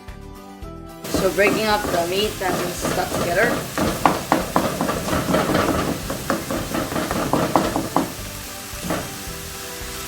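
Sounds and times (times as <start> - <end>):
meat sizzling in a frying pan: 1.0 - 10.0
utensil knocking against pan: 1.1 - 9.4.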